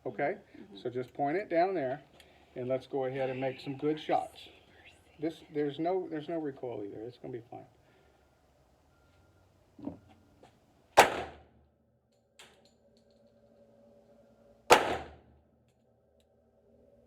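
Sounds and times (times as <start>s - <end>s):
pistol shots: 11.0s - 11.5s, 14.7s - 15.3s.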